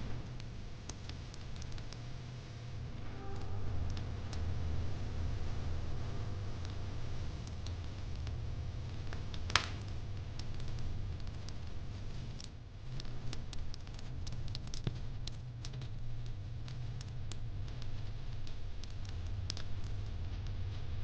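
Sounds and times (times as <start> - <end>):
low rumble of fire: 0.0 - 21.0
fire pit crackling: 6.6 - 20.6.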